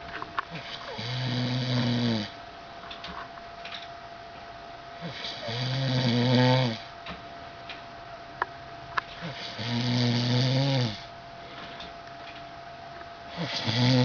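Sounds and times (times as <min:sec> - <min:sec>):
man snoring: 0:00.5 - 0:02.4, 0:05.0 - 0:06.9, 0:09.2 - 0:11.1, 0:13.3 - 0:14.0.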